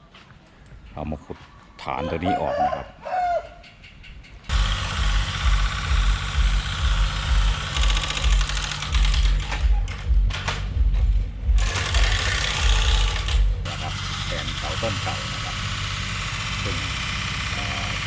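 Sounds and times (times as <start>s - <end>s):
excavator diesel engine: 4.5s - 18.0s.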